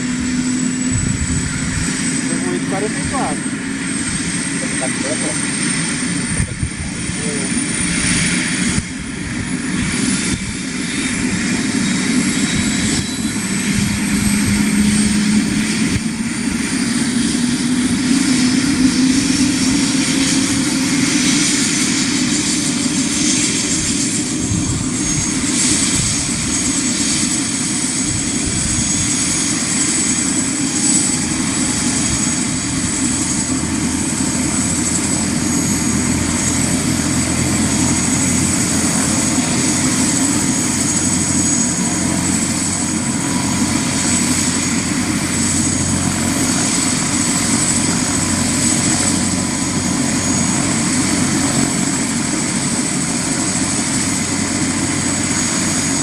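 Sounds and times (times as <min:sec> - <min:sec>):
helicopter rotor noise: 0:00.0 - 0:56.0
helicopter turbine whine: 0:00.0 - 0:56.0.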